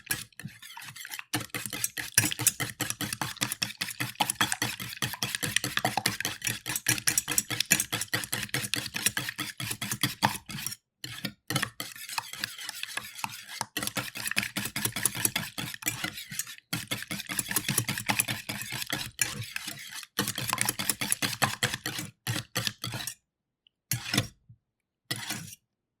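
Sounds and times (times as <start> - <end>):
whisk clicking against metal bowl: 0.1 - 10.7, 11.5 - 23.0.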